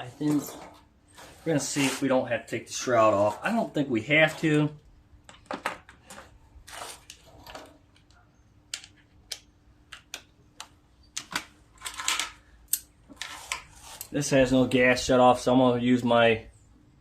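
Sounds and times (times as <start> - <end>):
scraping rustles: 0.0 - 4.7, 6.0 - 7.9.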